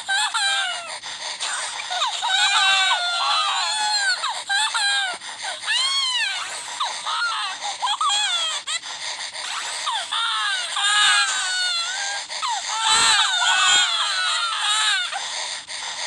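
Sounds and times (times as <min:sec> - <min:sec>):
high-pitched animal cries: 0:09.4 - 0:15.2.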